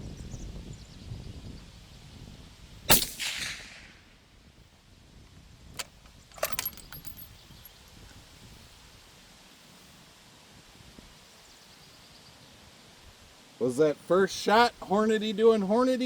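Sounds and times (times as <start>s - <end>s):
suppressed rifle shot: 2.9s - 4.1s.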